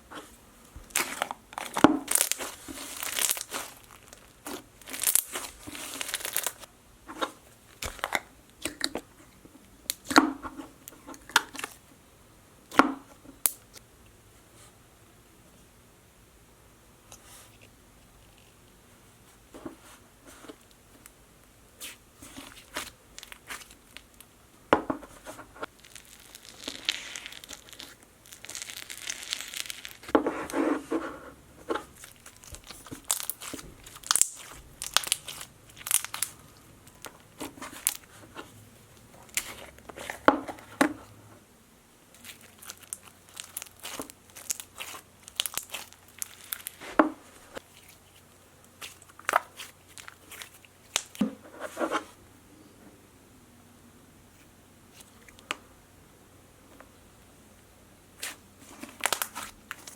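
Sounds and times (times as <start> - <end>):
hands squishing slime: 0.9 - 6.7, 21.8 - 24.0, 25.1 - 31.0, 31.8 - 41.0, 42.2 - 51.2, 58.2 - 59.9.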